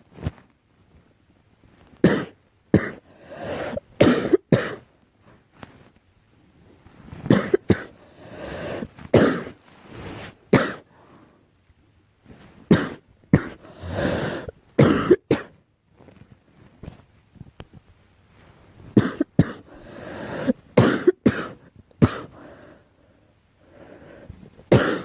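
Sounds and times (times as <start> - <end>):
girl coughing: 2.0 - 4.9, 7.3 - 8.0, 9.1 - 9.6, 10.5 - 10.9, 12.7 - 15.6, 19.0 - 19.7, 20.8 - 22.4, 24.7 - 25.0.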